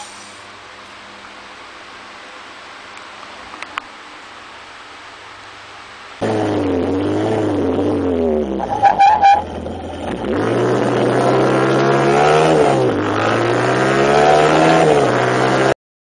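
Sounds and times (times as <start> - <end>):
brakes squealing: 6.2 - 15.8
vehicle engine: 6.2 - 15.8.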